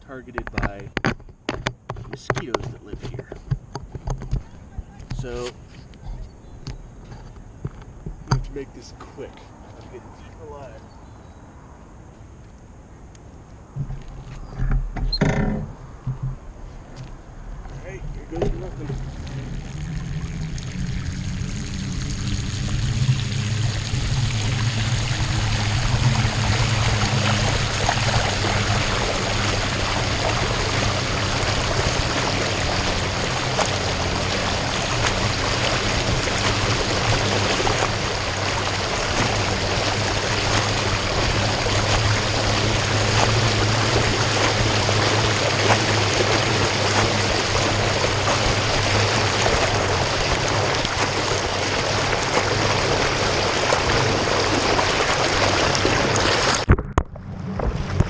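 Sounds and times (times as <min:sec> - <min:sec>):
bicycle wheels splashing through water: 0:17.8 - 0:58.0.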